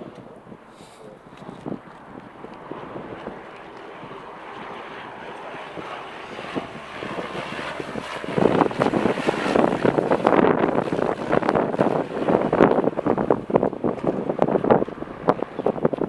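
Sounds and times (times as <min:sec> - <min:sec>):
jet aircraft noise: 0:00.0 - 0:16.0
wind buffeting microphone: 0:00.0 - 0:16.0.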